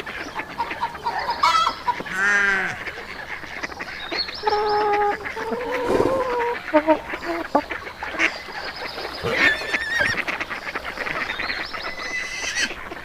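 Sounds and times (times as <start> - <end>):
fowl squawking: 0.0 - 13.0
geese honking: 0.0 - 13.0
warbling bird call: 4.2 - 12.8.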